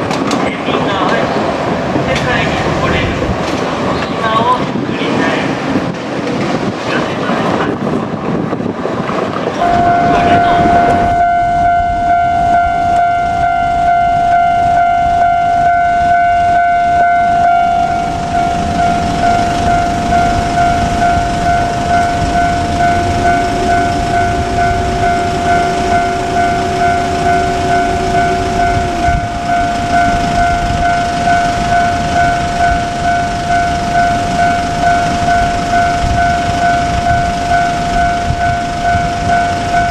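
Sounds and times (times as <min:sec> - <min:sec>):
train running noise: 0:00.0 - 0:39.9
level crossing alarm dinging: 0:09.6 - 0:39.9.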